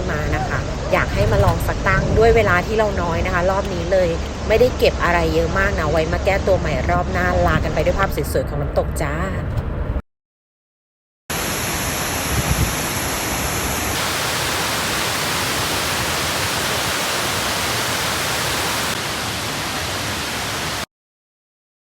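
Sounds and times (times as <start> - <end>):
waterfall rushing: 11.3 - 20.9.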